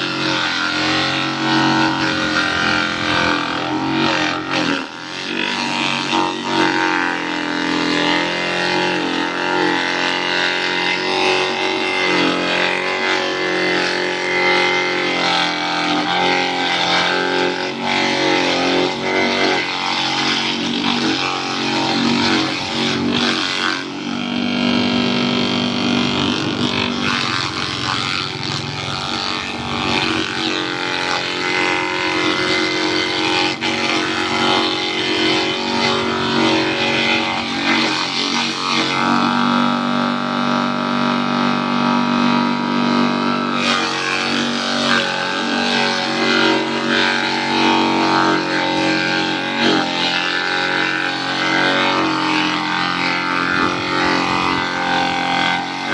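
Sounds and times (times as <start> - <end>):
chopping machine drone: 0.0 - 55.9.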